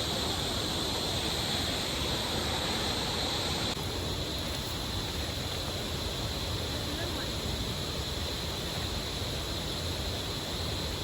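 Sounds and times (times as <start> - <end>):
waterfall and river rushing: 0.0 - 4.2.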